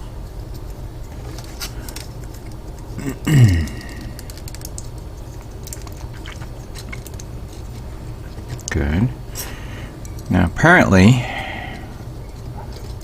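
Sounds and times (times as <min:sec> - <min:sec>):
person humming hmm: 0:03.0 - 0:04.3
plastic model parts clicking: 0:03.9 - 0:06.0.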